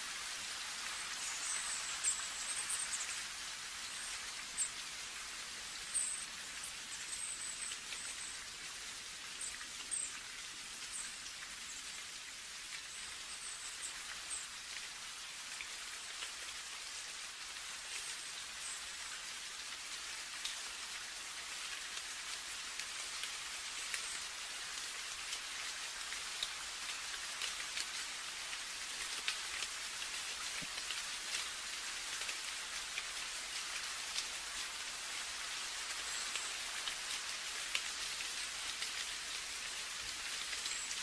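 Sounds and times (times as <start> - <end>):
steady rain falling: 0.0 - 41.0.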